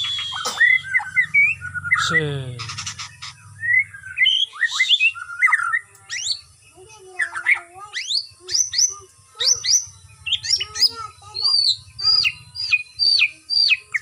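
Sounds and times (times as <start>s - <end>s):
bird singing whistles and sweeps: 0.0s - 2.0s.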